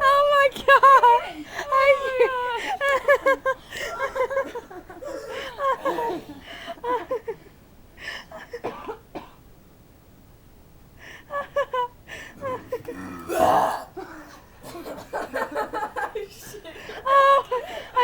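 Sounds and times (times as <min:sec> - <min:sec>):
person's short vocal sounds: 0:12.5 - 0:13.9.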